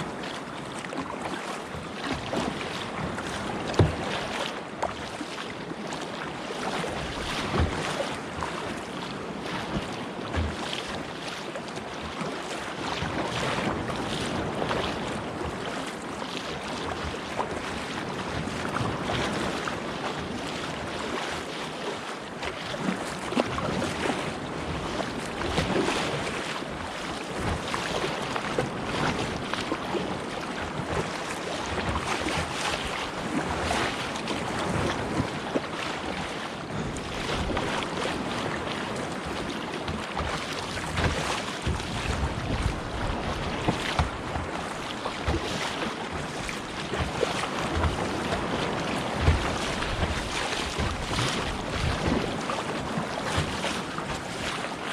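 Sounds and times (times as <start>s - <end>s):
water splashing around a kayak: 0.0s - 54.9s
wind noise on microphone: 40.8s - 44.6s.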